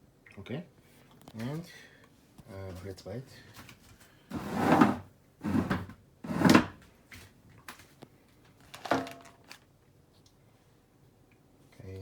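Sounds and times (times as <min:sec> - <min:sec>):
dish scraping: 0:04.3 - 0:06.7.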